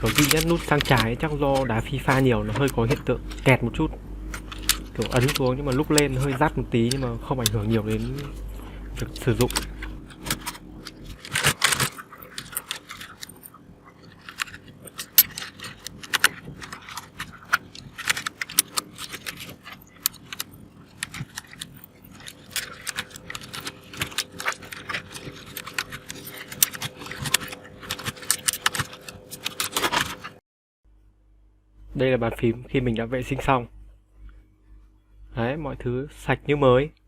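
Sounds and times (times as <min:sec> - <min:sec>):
mechanical keyboard typing: 0:00.0 - 0:08.4, 0:09.0 - 0:13.5, 0:14.1 - 0:30.4.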